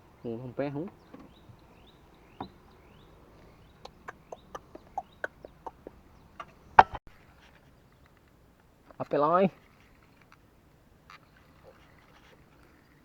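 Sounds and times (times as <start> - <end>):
short clucking calls: 2.2 - 7.0.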